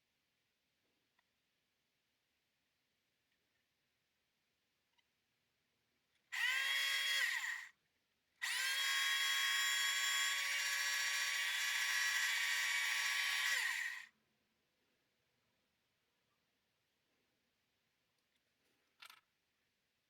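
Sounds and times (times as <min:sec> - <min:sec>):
small hand drill whining: 0:06.2 - 0:07.8, 0:08.4 - 0:14.1.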